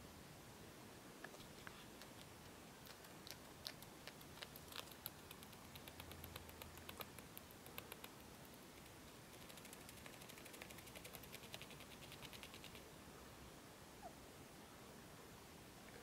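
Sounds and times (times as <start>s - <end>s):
degus grinding teeth: 2.0s - 8.1s.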